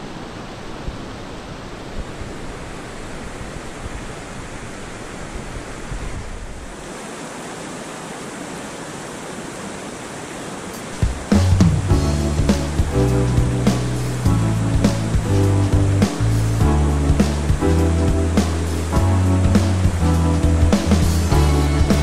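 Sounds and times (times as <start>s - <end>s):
stream water rushing: 0.0s - 22.0s
background music: 11.0s - 22.0s.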